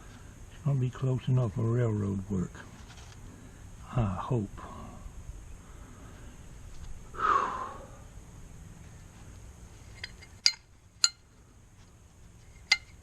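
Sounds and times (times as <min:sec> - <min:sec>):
breath exhale: 0:07.1 - 0:08.1
steel parts clinking: 0:09.8 - 0:11.2, 0:12.4 - 0:13.0.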